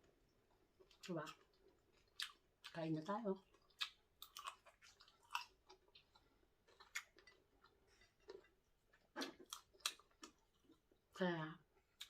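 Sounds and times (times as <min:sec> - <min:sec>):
person chewing crunchy food: 0:00.1 - 0:02.8, 0:03.4 - 0:11.1.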